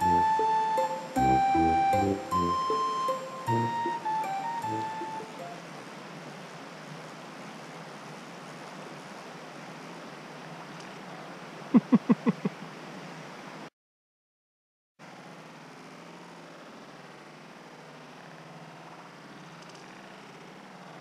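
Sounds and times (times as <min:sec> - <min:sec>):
short loud falling-pitch sounds: 0:00.0 - 0:05.6
stream water running: 0:05.5 - 0:13.7.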